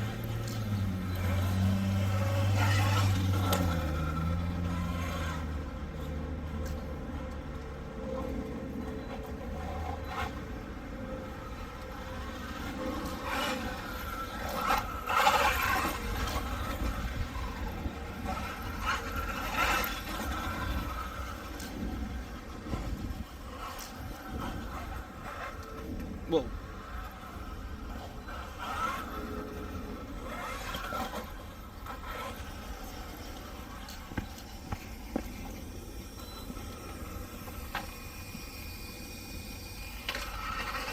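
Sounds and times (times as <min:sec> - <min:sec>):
tyres scraping concrete: 0:00.0 - 0:06.0
tyres scraping on concrete: 0:00.0 - 0:07.3, 0:08.1 - 0:40.9
electric motor whine: 0:00.0 - 0:40.9.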